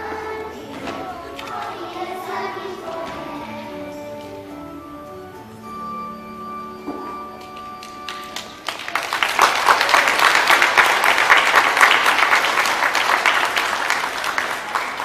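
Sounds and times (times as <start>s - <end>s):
music: 0.0s - 15.0s
audience applauding: 7.5s - 15.0s.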